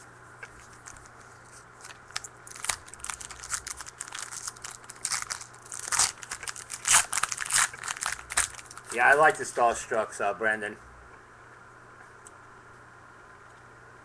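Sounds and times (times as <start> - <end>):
cards being handled: 0.4 - 9.2
wrapper crinkling and tearing: 0.4 - 9.2.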